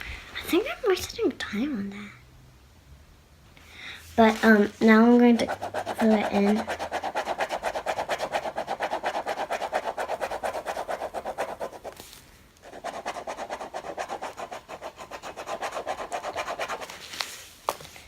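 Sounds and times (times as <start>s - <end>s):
drawing tool scribbling on paper: 5.3s - 12.0s, 12.6s - 17.0s.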